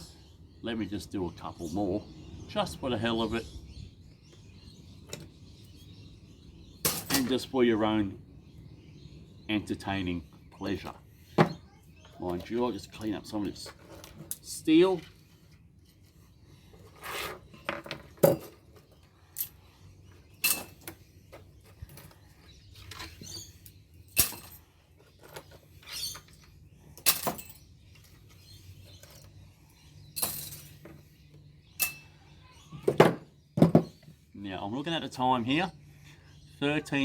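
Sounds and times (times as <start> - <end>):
scrap steel clinking: 20.4 - 21.0, 22.8 - 26.4, 30.1 - 30.8, 31.8 - 32.1.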